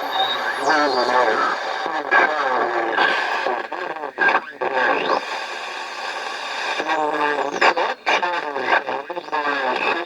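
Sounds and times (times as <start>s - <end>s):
steady whistling tone: 0.0s - 1.6s
garbled radio speech: 0.0s - 3.8s.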